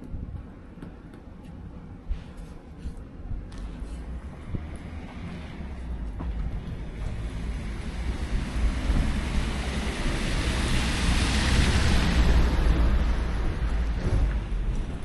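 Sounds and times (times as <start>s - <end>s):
wind rumble on microphone: 0.0s - 1.0s, 1.6s - 15.0s
vehicle tyres hissing on snow: 7.4s - 13.0s.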